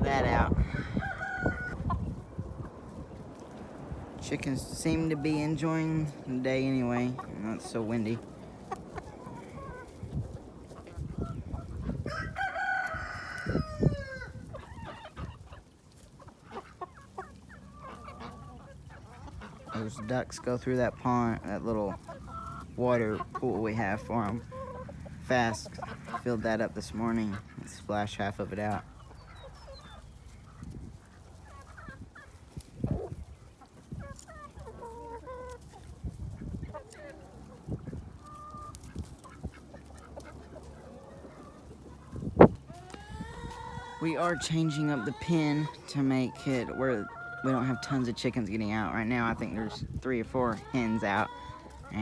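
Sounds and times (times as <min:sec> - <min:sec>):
wind buffeting microphone: 0:00.0 - 0:15.7, 0:28.9 - 0:34.3, 0:35.6 - 0:36.8, 0:37.4 - 0:39.7, 0:41.7 - 0:44.4, 0:49.3 - 0:50.4
hens clucking: 0:00.0 - 0:52.0
rooster crowing: 0:00.6 - 0:01.8, 0:12.0 - 0:14.4.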